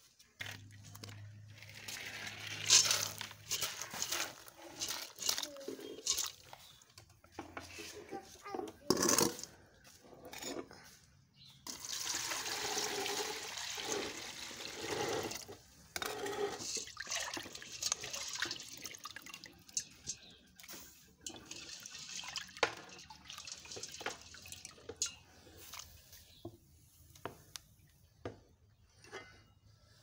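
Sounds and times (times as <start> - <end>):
maize and water pouring into pot: 0.4 - 6.8, 11.6 - 26.1.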